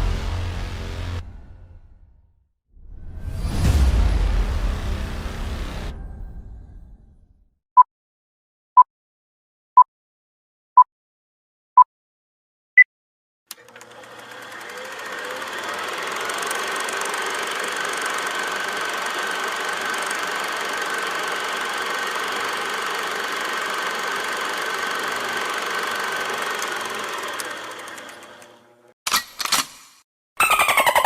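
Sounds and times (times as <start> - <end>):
steady mechanical whine: 13.5 - 28.9
machine running with rattle: 13.5 - 29.6.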